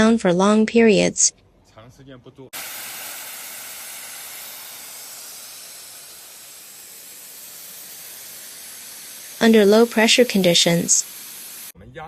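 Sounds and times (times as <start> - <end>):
gas hissing through valve: 2.5 - 11.8.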